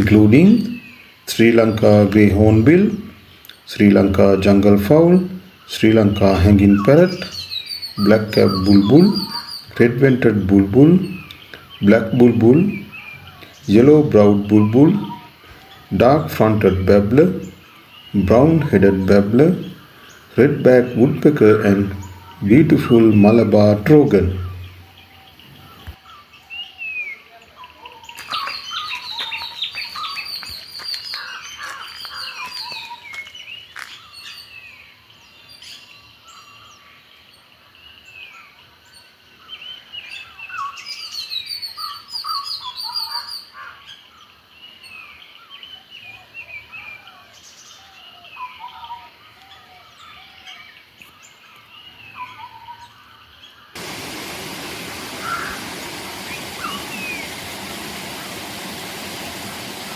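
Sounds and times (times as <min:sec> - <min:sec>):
forest birds chirping and trilling: 0:00.0 - 0:59.9
falling water rushing: 0:53.8 - 0:59.9.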